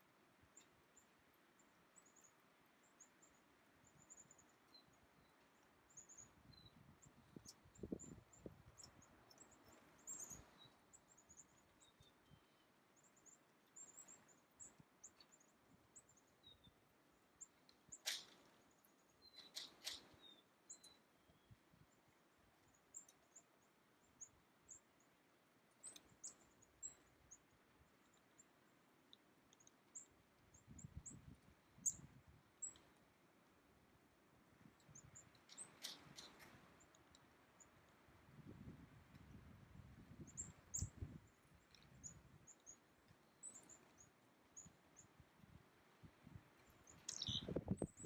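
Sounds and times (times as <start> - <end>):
short bird chirps: 17.5 - 18.6, 19.2 - 21.6, 46.9 - 48.0.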